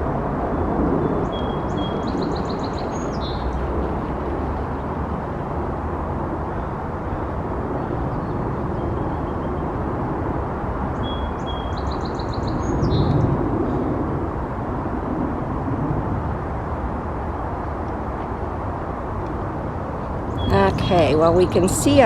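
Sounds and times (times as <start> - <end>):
songbird singing: 1.0 - 5.0, 6.5 - 9.8, 11.0 - 13.3, 20.2 - 22.0
low outdoor rumble: 2.0 - 8.8, 13.2 - 22.0.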